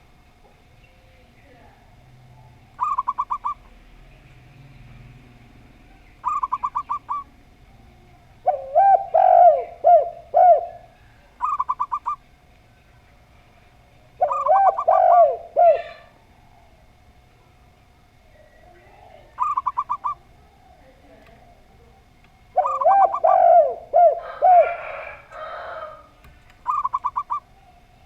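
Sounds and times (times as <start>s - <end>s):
lower rounded dove coos: 2.2s - 4.2s, 5.8s - 12.2s, 14.0s - 17.1s, 18.2s - 28.0s
short higher dove coos: 8.4s - 12.2s, 14.2s - 16.2s, 22.6s - 27.5s.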